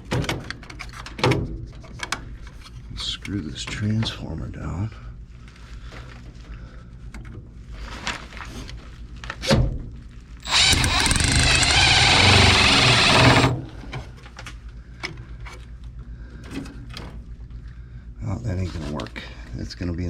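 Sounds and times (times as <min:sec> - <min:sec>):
cordless driver running screw: 0:10.4 - 0:13.6.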